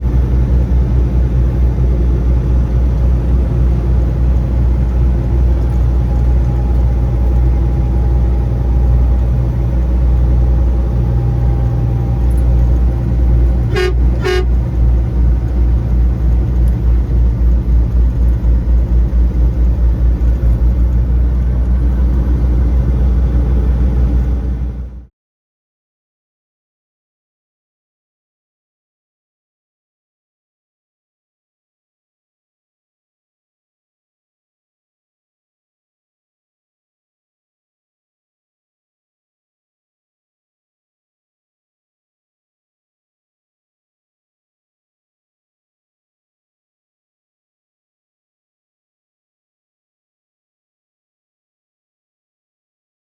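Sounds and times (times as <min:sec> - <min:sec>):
truck engine and road rumble: 0:00.0 - 0:25.1
truck horn toots: 0:13.5 - 0:14.9.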